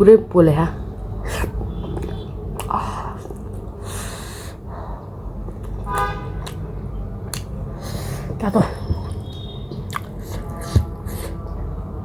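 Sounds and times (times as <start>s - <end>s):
hard mouth breathing: 1.2s - 5.6s, 7.7s - 8.4s, 9.9s - 11.5s
wet mouth clicks: 1.3s - 3.7s, 5.4s - 6.7s, 7.3s - 7.6s, 9.1s - 11.4s.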